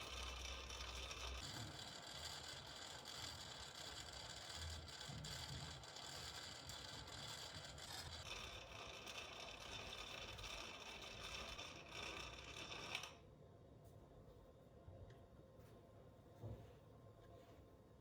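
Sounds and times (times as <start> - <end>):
coffee appliance whirring: 0.0 - 13.2.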